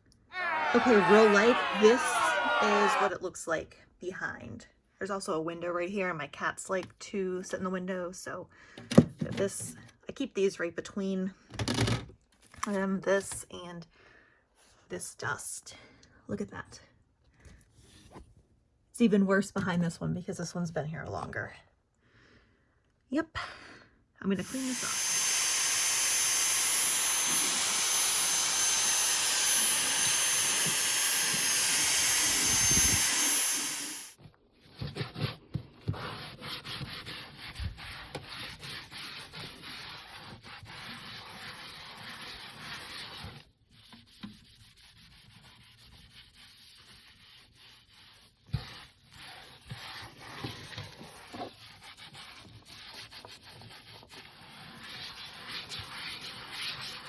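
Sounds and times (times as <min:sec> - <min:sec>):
cloth wiping a machine: 0:24.4 - 0:34.1
loud steady hiss: 0:24.5 - 0:34.2.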